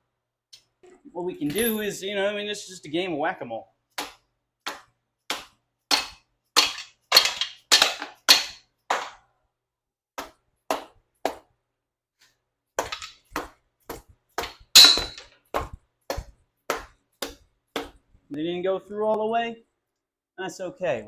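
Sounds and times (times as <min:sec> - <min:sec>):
mallet striking metal: 0:14.4 - 0:15.3.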